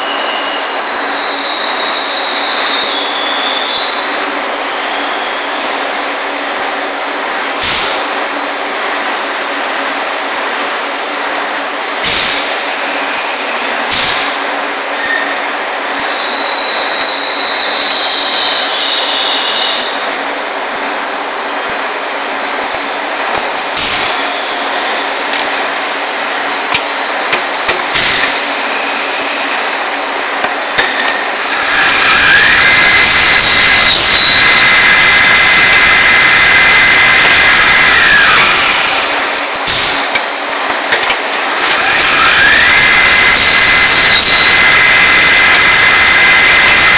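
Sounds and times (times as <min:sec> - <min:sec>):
high whine: 0:00.0 - 0:46.9
lathe mechanical drone: 0:00.0 - 0:46.9
loud rushing noise: 0:17.4 - 0:46.9.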